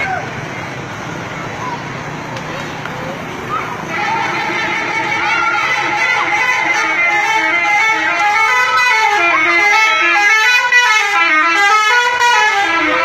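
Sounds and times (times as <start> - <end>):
bus musical horn tune: 3.8 - 13.0.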